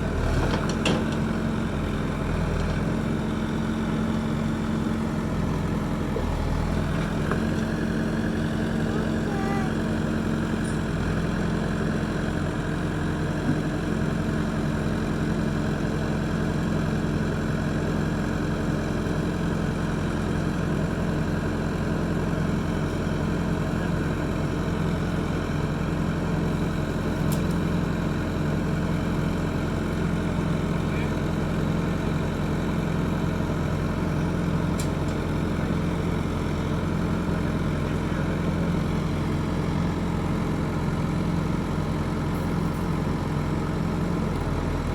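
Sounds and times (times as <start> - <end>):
crawler engine running: 0.0 - 44.9.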